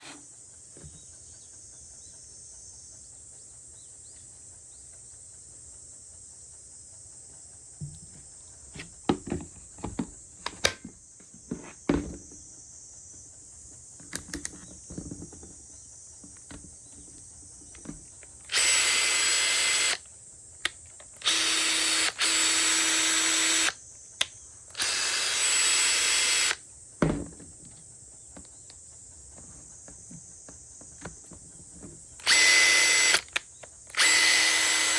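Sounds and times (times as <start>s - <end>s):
impact driver motor whine: 18.5s - 20.0s, 21.2s - 23.8s, 24.8s - 26.6s, 32.2s - 34.9s.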